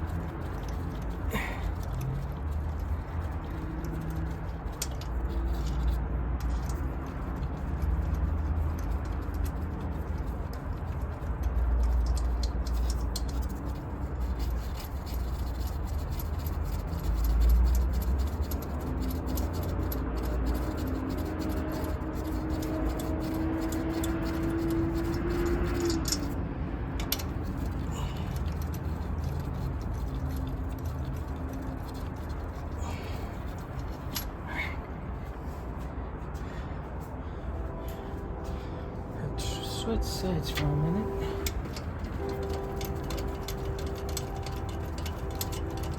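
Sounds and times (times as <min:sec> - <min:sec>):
ratchet wrench clicking: 0:00.0 - 0:26.4, 0:27.0 - 0:34.4, 0:41.4 - 0:45.9
steady hum: 0:00.0 - 0:45.9
metal tools clinking: 0:24.7 - 0:26.4, 0:39.4 - 0:45.9.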